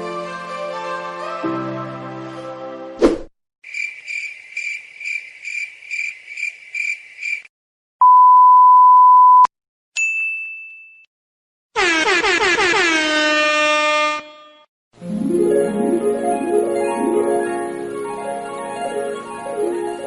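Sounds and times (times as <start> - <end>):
censor bleep: 8.0 - 9.5
short high ding: 10.0 - 11.1.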